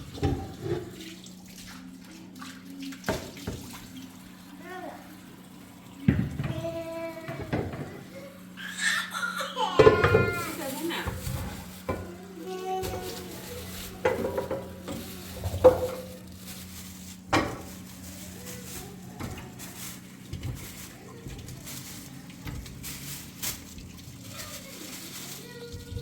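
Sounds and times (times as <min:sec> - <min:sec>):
pots and utensils clinking: 0:00.0 - 0:01.1, 0:06.0 - 0:08.9, 0:09.6 - 0:26.0.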